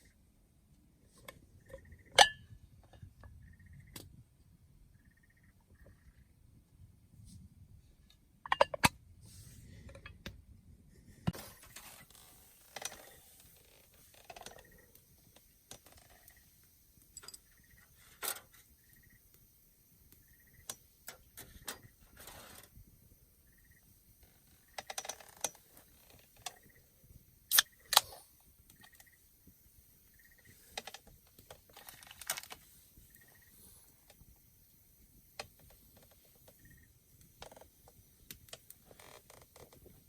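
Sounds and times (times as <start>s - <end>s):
faint high chirps: 4.9s - 6.4s, 14.4s - 22.1s, 23.0s - 24.9s, 25.9s - 28.0s, 28.6s - 31.4s, 33.0s - 37.0s.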